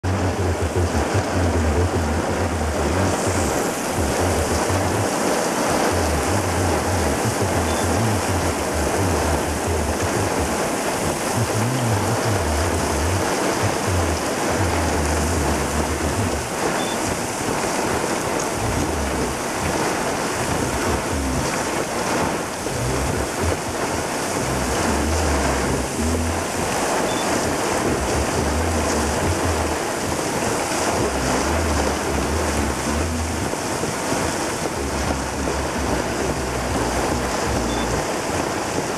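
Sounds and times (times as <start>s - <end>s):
rain falling: 0.0s - 38.9s
wind buffeting microphone: 0.0s - 38.9s.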